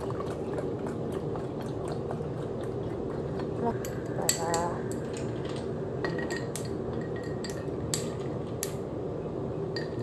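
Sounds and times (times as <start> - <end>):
steady background hum: 0.0 - 10.0.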